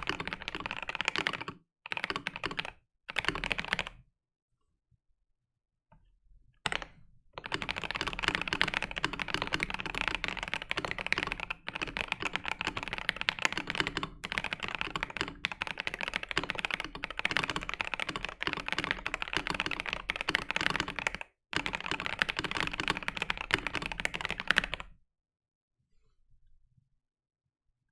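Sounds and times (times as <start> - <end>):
clacky keyboard typing: 0.0 - 4.0, 6.7 - 24.9.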